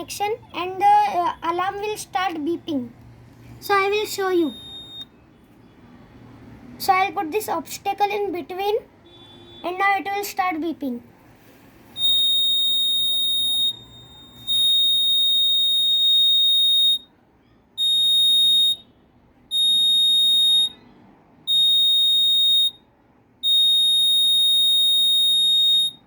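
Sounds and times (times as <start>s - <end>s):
alarm buzzer long beeps: 4.4s - 5.1s, 12.0s - 17.1s, 17.8s - 20.8s, 21.5s - 26.0s.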